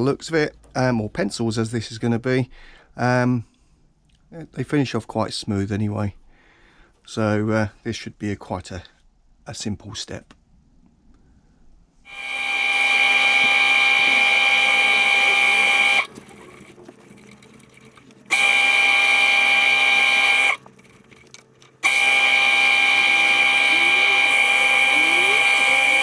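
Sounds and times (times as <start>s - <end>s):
lathe motor whining: 12.1s - 26.0s.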